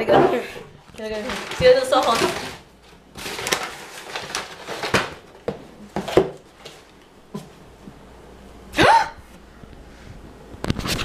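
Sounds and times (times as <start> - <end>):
person squealing: 8.8 - 9.2.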